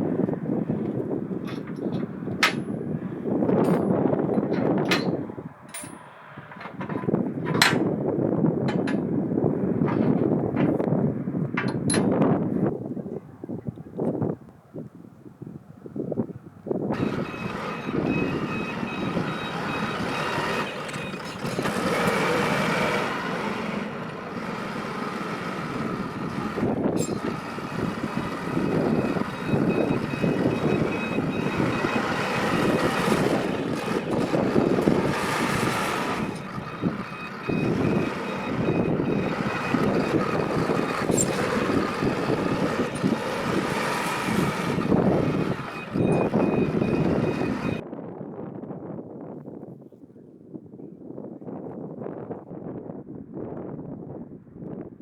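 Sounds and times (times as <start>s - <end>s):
backhoe loader engine running: 0.0s - 12.2s, 16.9s - 47.8s
reversing alarm beeping: 17.0s - 47.8s.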